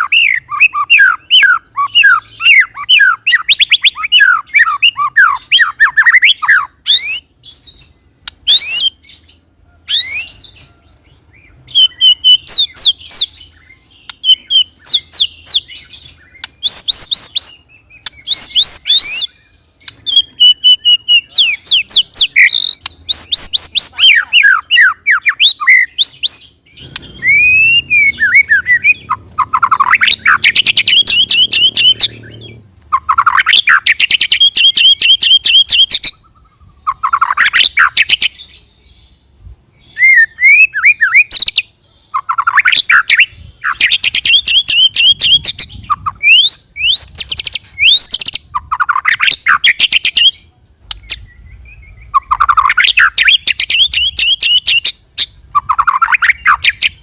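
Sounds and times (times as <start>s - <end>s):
bird singing rapid sweeping notes: 11.4s - 38.7s, 42.2s - 50.4s.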